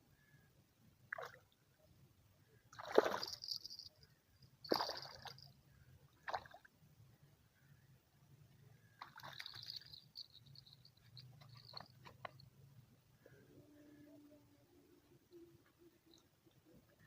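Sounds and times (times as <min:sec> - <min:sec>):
water splashing and sloshing: 0:01.1 - 0:01.5, 0:02.7 - 0:03.8, 0:04.6 - 0:05.5, 0:06.2 - 0:06.7, 0:09.0 - 0:12.4.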